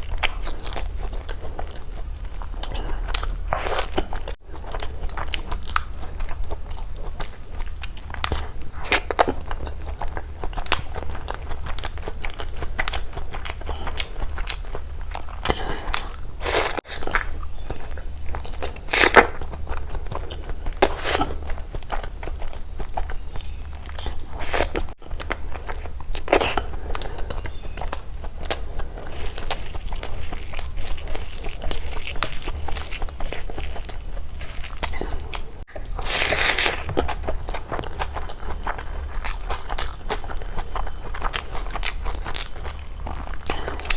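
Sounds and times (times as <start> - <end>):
wet chewing: 0.0 - 43.9
crisp crunches: 27.8 - 43.9.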